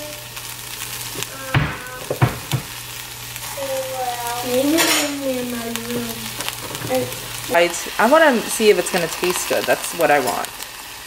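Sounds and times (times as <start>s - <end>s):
food sizzling in oil: 0.0s - 11.0s
utensil knocking against pan: 1.5s - 2.7s.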